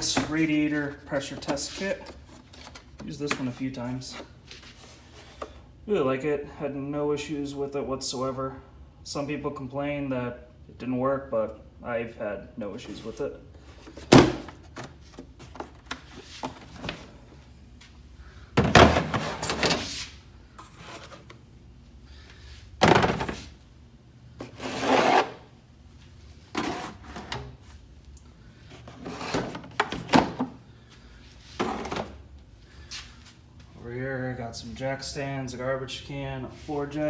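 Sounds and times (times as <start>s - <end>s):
tools scraping and knocking: 26.5s - 27.5s.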